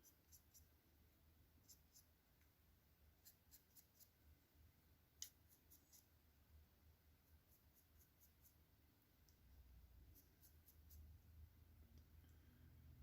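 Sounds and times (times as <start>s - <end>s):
low room hum: 0.0s - 13.0s
dry brush scratching: 3.2s - 4.2s, 5.2s - 6.1s, 7.2s - 8.6s, 10.0s - 11.2s.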